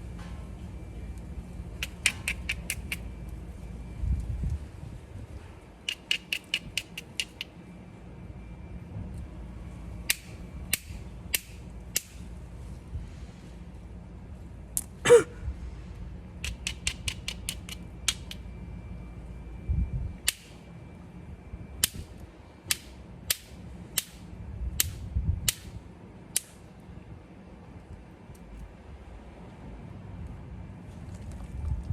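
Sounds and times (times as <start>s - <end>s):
stone knapping clicks: 1.8s - 3.0s, 5.9s - 7.5s, 16.4s - 18.4s.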